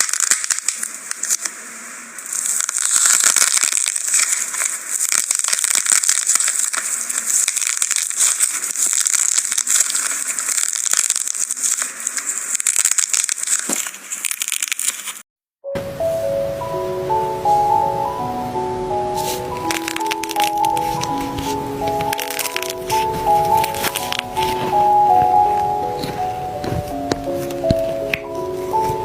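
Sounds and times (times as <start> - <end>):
slime squeezed by hand crackling: 0.0 - 1.5, 2.2 - 15.2, 19.2 - 26.3.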